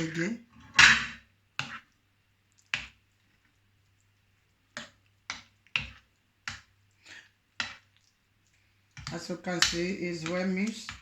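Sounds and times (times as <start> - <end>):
utensil clicking against bowl: 9.0 - 11.0.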